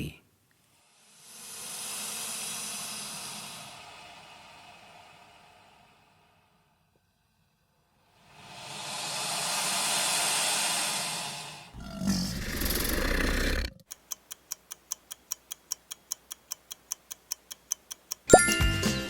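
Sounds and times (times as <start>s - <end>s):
crocodile hissing: 0.8s - 6.8s, 8.0s - 13.8s
low rough growl: 11.7s - 13.8s
clock-like ticking: 13.7s - 18.6s.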